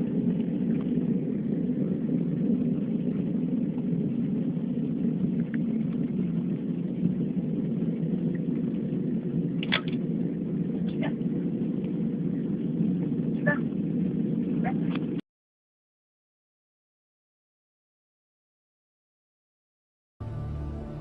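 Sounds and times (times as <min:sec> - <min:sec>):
low droning rumble: 0:00.0 - 0:15.2, 0:20.2 - 0:21.0.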